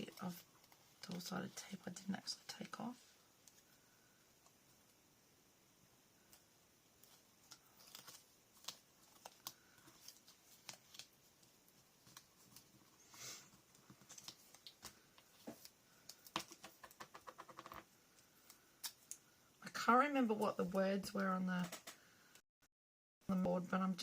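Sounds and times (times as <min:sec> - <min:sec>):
paper rustling: 0:07.0 - 0:17.6.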